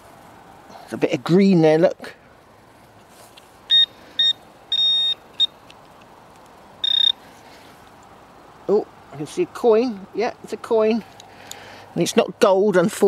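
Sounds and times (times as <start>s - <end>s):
metal detector beeps: 3.7s - 5.5s, 6.8s - 7.2s.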